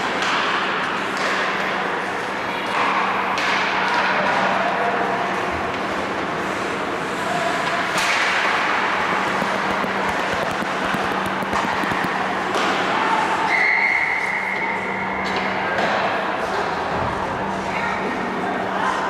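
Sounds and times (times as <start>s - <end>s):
hockey sticks and puck clacking: 0.0s - 1.7s, 5.7s - 13.6s.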